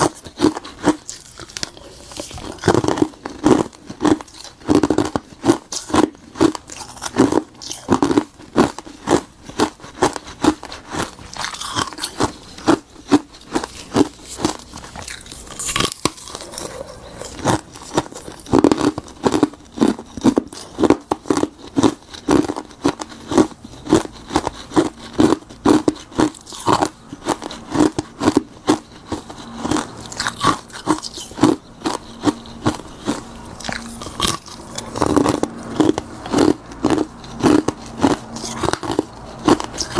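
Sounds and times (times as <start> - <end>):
ice being chewed crunching: 0.0 - 39.9.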